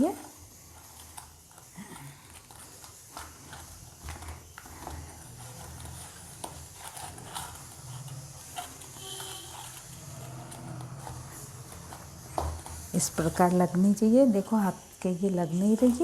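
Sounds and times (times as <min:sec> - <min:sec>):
hands kneading dough: 0:00.0 - 0:16.0.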